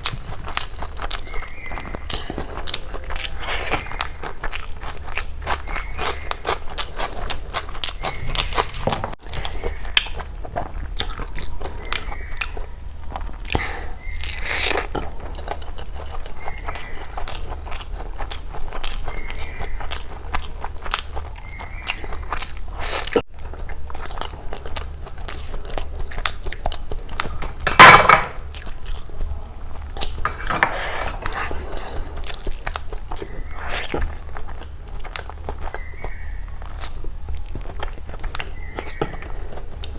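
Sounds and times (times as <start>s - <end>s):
loud crunching: 0.0s - 11.5s
wet chewing and mouth smacks: 0.0s - 27.9s, 28.5s - 39.9s.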